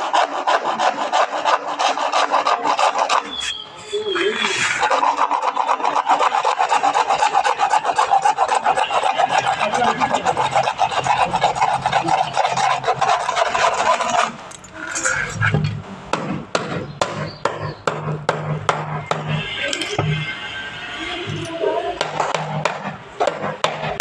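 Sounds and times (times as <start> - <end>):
hand tool rasping: 0.0 - 15.7.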